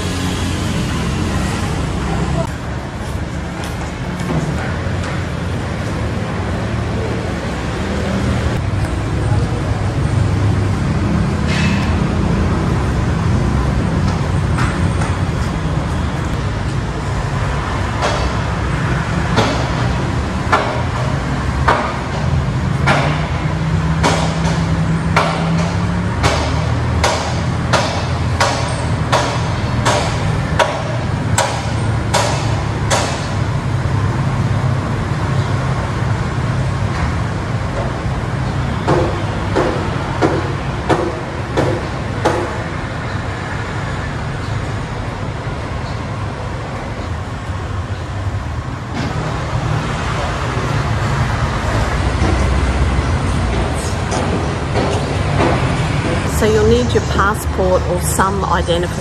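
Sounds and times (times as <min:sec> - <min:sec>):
low rumble of vehicles: 0:00.0 - 0:59.0
sharp knocks: 0:19.3 - 0:33.4, 0:38.8 - 0:42.8, 0:52.0 - 0:56.3.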